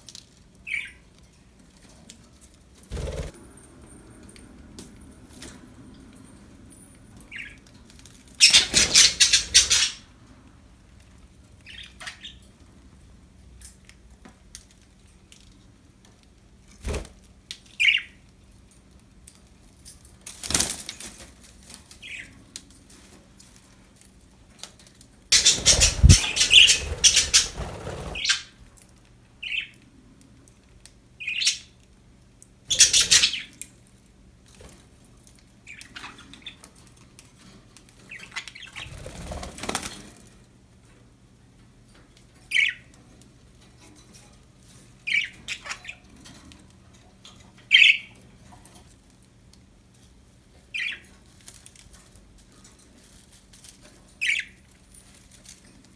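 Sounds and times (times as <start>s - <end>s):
birds flapping wings: 2.8s - 5.6s, 25.3s - 28.5s, 38.8s - 40.2s
budgerigars chirping: 8.4s - 10.0s, 25.4s - 28.5s, 32.7s - 33.5s.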